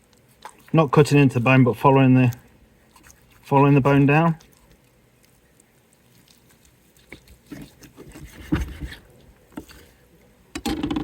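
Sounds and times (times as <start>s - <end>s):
wet handling noises: 0.0s - 11.0s.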